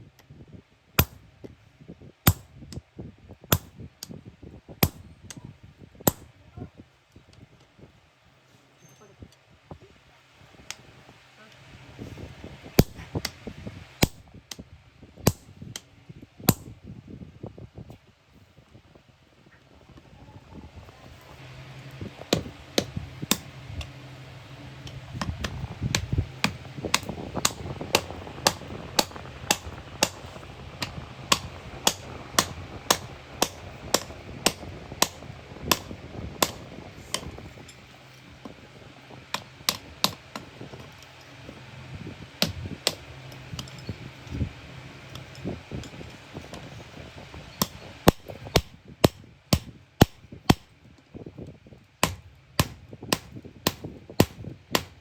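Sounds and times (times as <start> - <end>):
low steady hum: 0.0 - 55.0
hammer striking iron on anvil: 1.0 - 1.2, 2.3 - 2.5, 3.5 - 3.7, 4.8 - 5.1, 6.1 - 6.3, 12.8 - 13.0, 22.3 - 23.5, 31.3 - 37.3, 47.6 - 50.6, 52.0 - 55.0.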